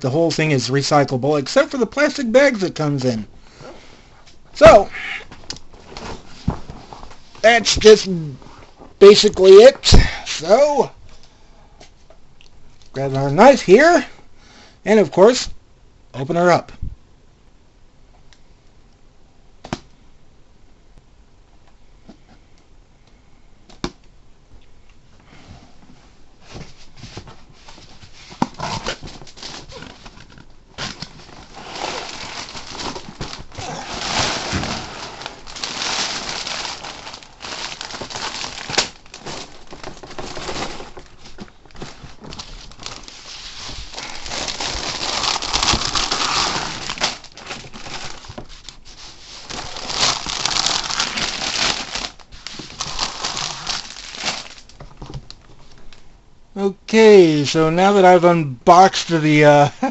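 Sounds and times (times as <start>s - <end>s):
plastic bags and cardboard rustling: 0.0s - 10.6s, 25.3s - 56.0s.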